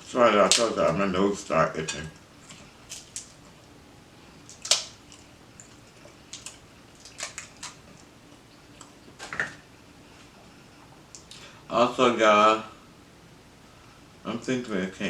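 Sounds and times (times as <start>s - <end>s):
clicks and crackles of chewing: 1.9s - 3.7s, 4.4s - 9.6s, 10.2s - 11.5s.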